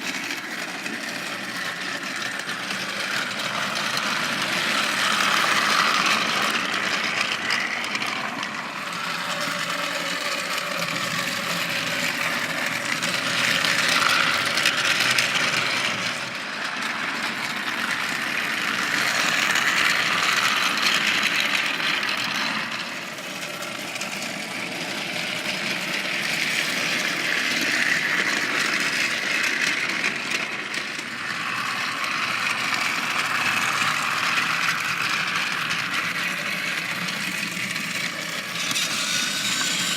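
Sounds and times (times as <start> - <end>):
toy train motor whirring: 0.0 - 39.9.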